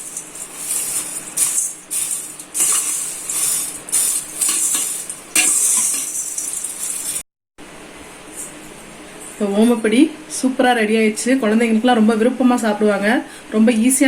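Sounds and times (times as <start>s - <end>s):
crunchy snack rattling in a bowl: 0.0s - 7.2s.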